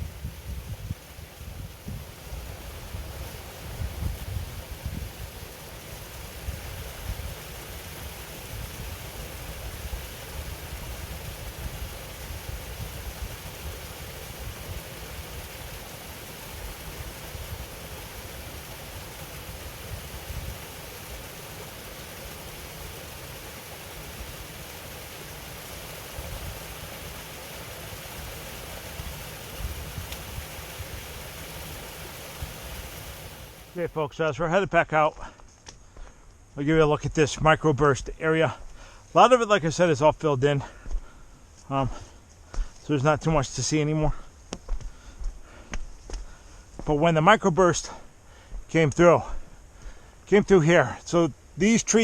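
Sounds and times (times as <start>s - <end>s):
wind on microphone: 0.0s - 5.4s, 29.0s - 31.2s
waterfall rushing: 0.0s - 34.0s.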